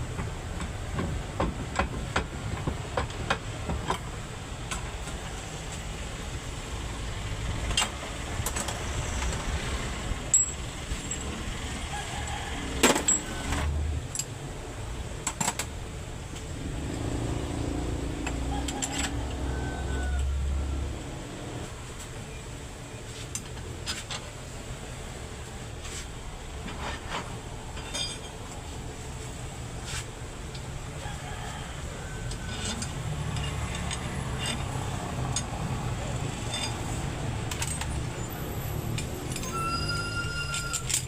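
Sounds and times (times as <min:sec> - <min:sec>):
metallic clinks and knocks: 0:10.3 - 0:11.4, 0:27.7 - 0:28.5, 0:32.3 - 0:35.6, 0:36.2 - 0:38.1, 0:38.9 - 0:41.0.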